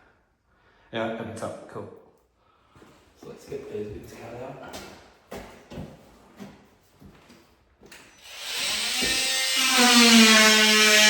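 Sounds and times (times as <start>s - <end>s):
power tool motor whine: 8.2s - 11.0s.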